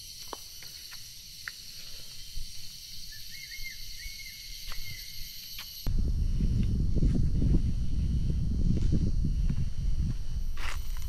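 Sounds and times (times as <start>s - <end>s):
high-pitched insect chorus: 0.0s - 11.0s
bird chirping: 3.0s - 5.8s.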